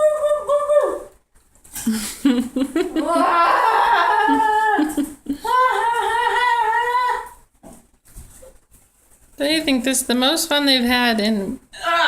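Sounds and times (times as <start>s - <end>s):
dog howling: 3.0s - 7.4s.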